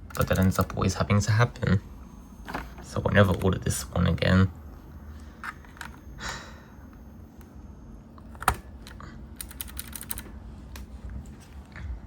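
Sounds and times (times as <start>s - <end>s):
keyboard parts clicking: 8.3s - 10.9s.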